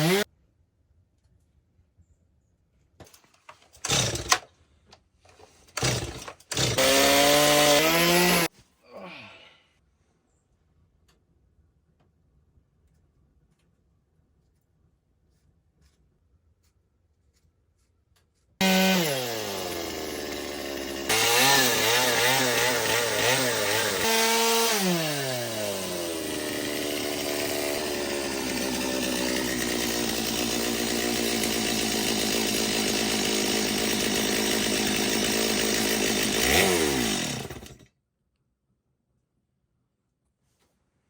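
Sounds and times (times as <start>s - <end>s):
chainsaw cutting wood: 0.0s - 0.3s, 3.8s - 4.5s, 5.6s - 8.5s, 18.6s - 37.8s.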